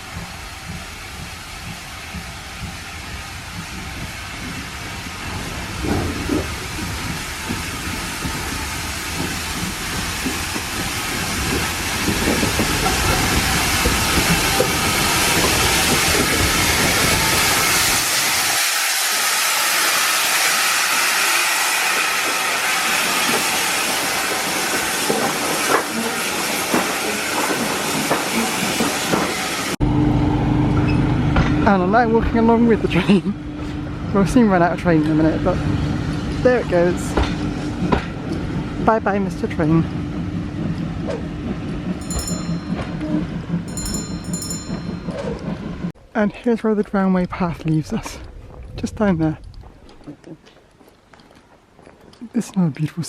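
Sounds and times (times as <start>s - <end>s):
hissing steam: 0.0s - 29.8s
steam locomotive pulling away: 0.0s - 31.0s, 34.6s - 45.9s.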